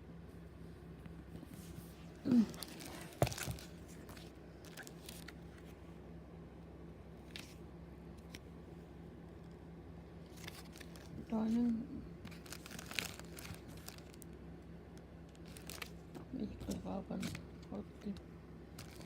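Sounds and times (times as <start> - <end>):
steady low hum: 0.0 - 19.0
paper rustling: 1.4 - 5.8, 7.2 - 7.6, 10.3 - 14.2, 15.4 - 17.4, 18.8 - 19.0.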